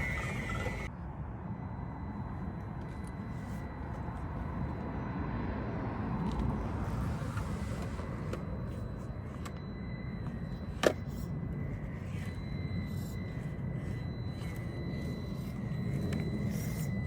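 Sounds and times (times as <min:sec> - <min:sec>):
toy car electric motor running: 0:00.0 - 0:00.9, 0:11.9 - 0:17.0.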